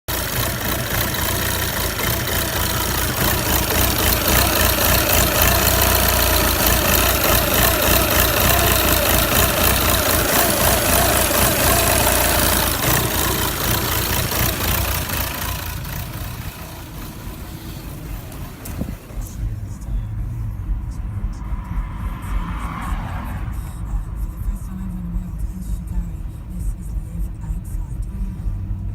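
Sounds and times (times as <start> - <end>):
diesel engine idling roughly: 0.1 - 22.4.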